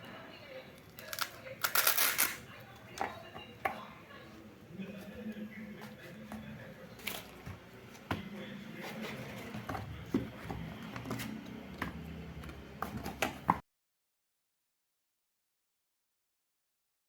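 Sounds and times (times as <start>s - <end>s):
hands handling printer and packaging: 6.9s - 8.2s.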